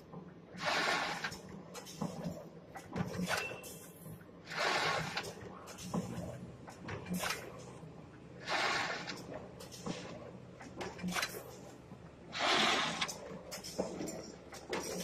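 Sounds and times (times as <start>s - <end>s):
machine clicks and knocks: 1.2s - 4.2s, 5.1s - 7.8s, 9.0s - 12.0s, 12.8s - 15.0s.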